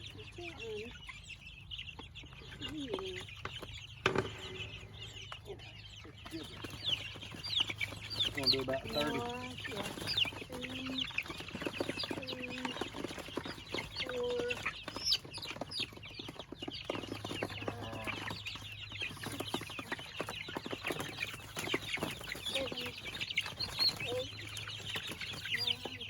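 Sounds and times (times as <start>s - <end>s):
chicks cheeping: 0.0s - 26.0s.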